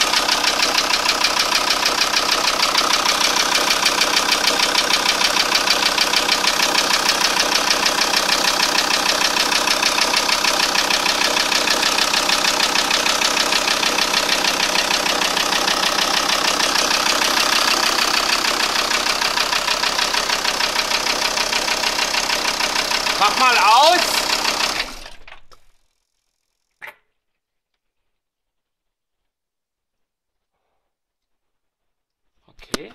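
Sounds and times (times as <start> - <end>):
diesel engine idling with rattle: 0.0 - 25.2.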